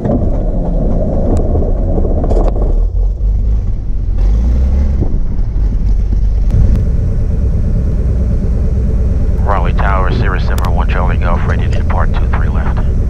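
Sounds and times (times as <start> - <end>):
aircraft engine and propeller drone: 6.2 - 13.0.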